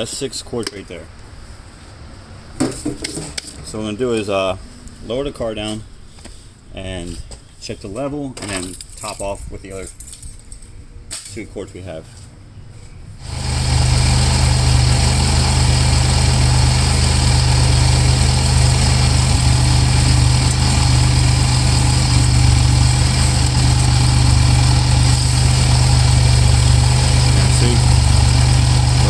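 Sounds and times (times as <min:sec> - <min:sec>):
car engine starting and idling: 0:13.2 - 0:29.0.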